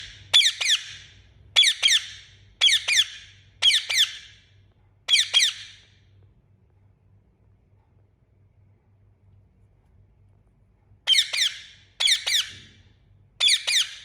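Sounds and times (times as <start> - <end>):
parakeet chirping: 0.0 - 4.4, 5.1 - 5.8, 11.1 - 12.7, 13.4 - 14.0.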